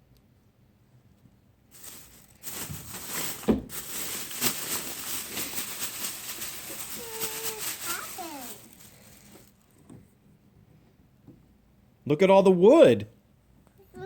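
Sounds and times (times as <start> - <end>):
packaging rustling and crinkling: 1.7 - 9.8
thump: 3.4 - 3.8.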